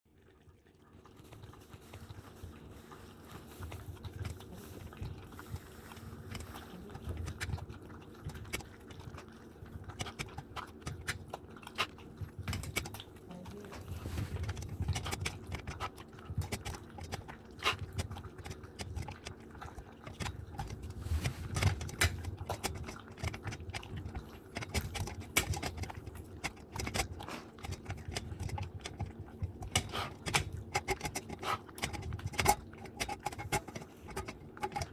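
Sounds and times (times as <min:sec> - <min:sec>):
dog chewing and crunching food: 0:00.1 - 0:34.9
clicks and knocks against bowl: 0:09.9 - 0:13.1, 0:14.3 - 0:34.9.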